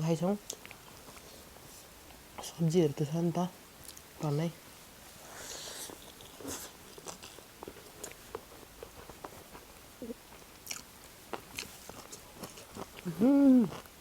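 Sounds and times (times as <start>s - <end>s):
person chewing food: 5.4s - 14.0s.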